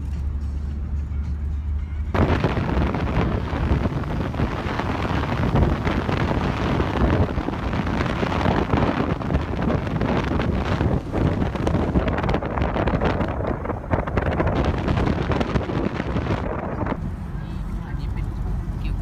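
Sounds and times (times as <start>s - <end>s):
wind blowing across microphone: 2.1s - 18.1s.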